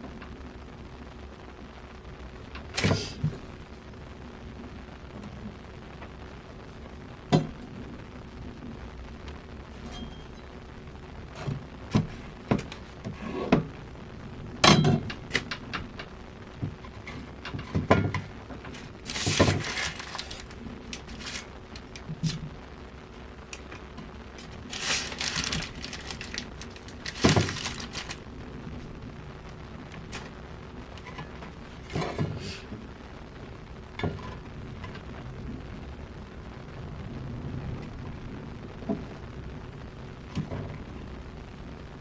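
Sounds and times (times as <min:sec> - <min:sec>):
scraping crunching rustles: 0:18.6 - 0:22.5, 0:24.4 - 0:28.3.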